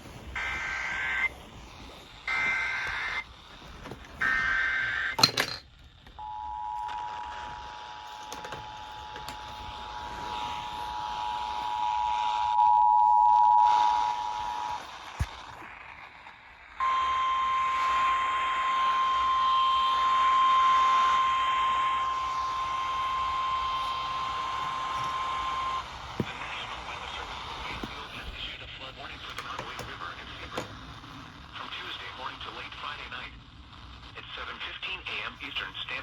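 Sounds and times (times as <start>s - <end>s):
broadcast hiss: 0.0s - 12.6s, 13.3s - 36.0s
steady alarm tone: 0.2s - 5.3s, 6.2s - 14.9s, 16.8s - 28.5s
warbling data tones: 0.2s - 5.3s
two-tone attention signal: 16.8s - 23.9s.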